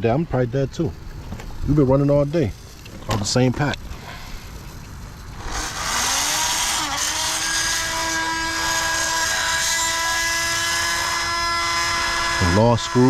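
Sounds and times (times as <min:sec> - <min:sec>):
small electric motor whining: 0:04.5 - 0:13.0.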